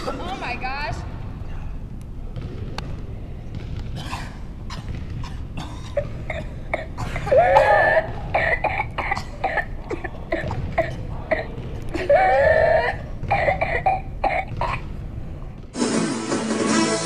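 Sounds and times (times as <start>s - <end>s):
person coughing: 4.0s - 14.9s.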